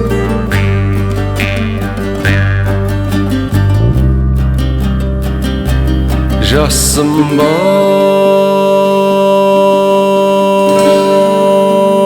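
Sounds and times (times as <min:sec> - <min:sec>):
backing music: 0:00.0 - 0:07.9
person singing a long held note: 0:07.0 - 0:12.0.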